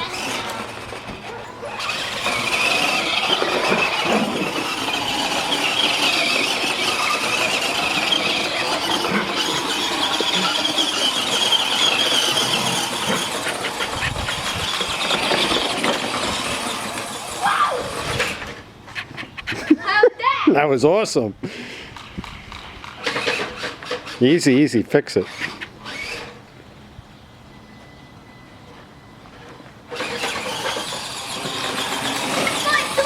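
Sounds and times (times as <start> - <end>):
electric motor whine: 0.0 - 18.6.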